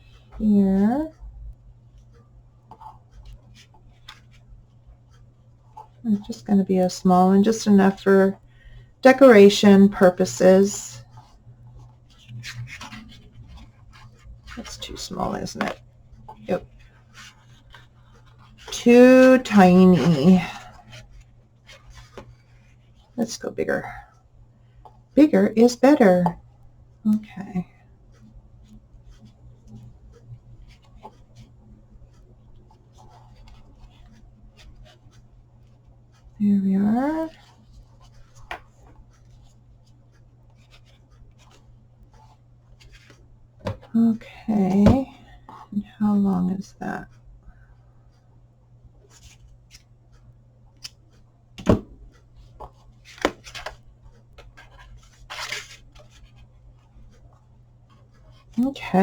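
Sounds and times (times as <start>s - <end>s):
low steady hum: 0.0s - 59.0s
paper rustling: 51.6s - 57.2s.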